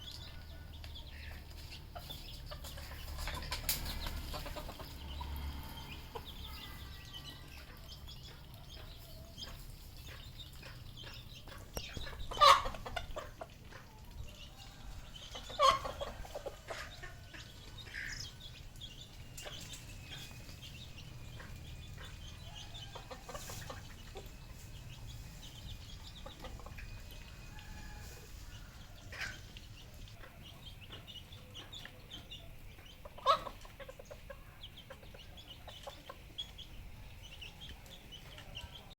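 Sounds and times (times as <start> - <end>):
junglefowl clucking: 1.2 - 5.4, 11.5 - 13.9, 15.3 - 18.2, 21.4 - 24.4, 33.0 - 36.3.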